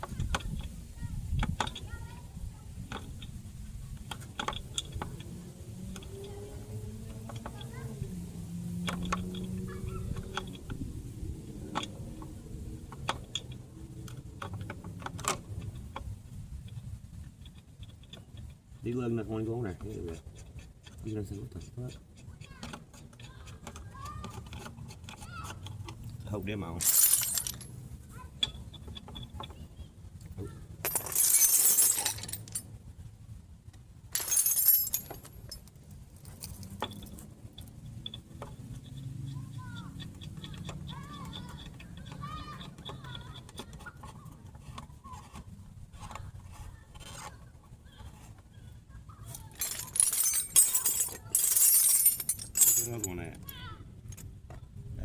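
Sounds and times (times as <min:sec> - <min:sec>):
metallic clinks of hand tools: 0:26.8 - 0:27.7, 0:30.9 - 0:32.6, 0:34.2 - 0:35.6, 0:49.3 - 0:53.4.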